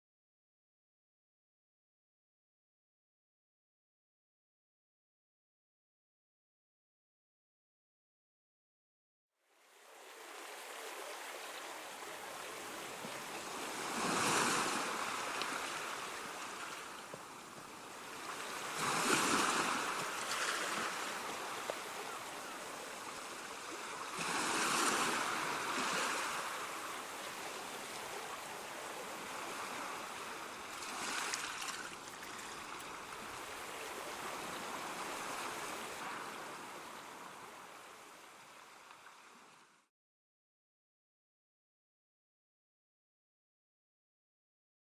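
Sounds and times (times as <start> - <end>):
rushing water: 9.6 - 39.9.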